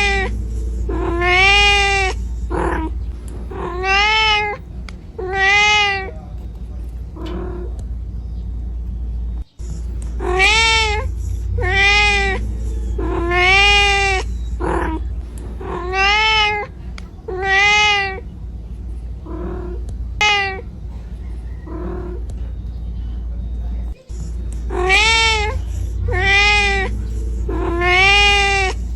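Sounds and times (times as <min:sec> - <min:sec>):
kitten meowing: 0:00.0 - 0:04.6, 0:05.2 - 0:06.2, 0:10.2 - 0:18.3, 0:19.3 - 0:20.7, 0:24.6 - 0:28.9.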